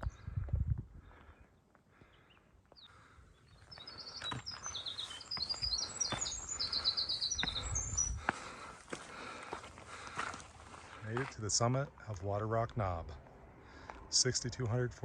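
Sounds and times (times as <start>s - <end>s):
songbird chirping: 1.3s - 8.7s
footsteps walking: 3.7s - 11.6s.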